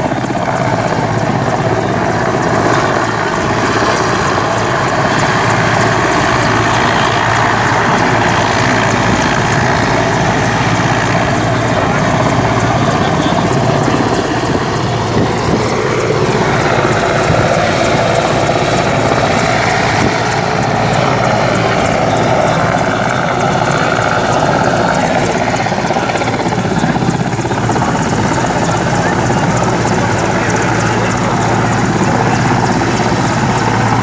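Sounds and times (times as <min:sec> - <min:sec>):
helicopter rotor and engine: 0:00.0 - 0:34.0.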